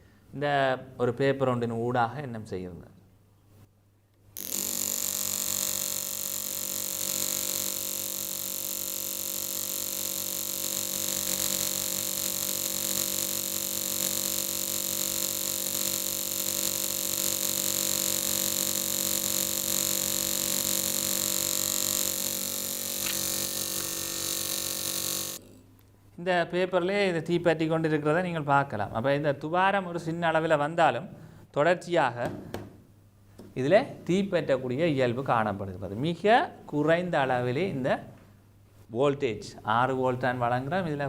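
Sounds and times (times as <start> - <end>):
electric spark buzzing: 4.4 - 25.5.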